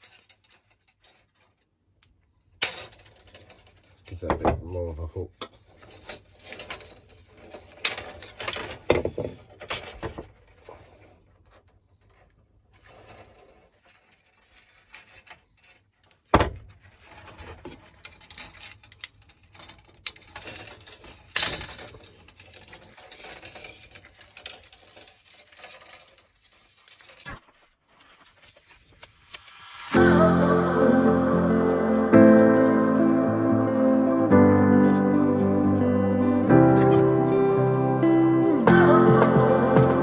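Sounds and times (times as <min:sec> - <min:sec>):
clicks and scrapes of hand work: 0:00.0 - 0:04.2, 0:05.4 - 0:29.1.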